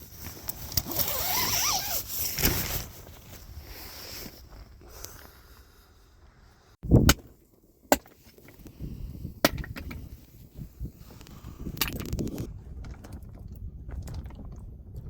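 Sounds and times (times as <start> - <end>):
rustling handling noise: 0.0 - 5.1.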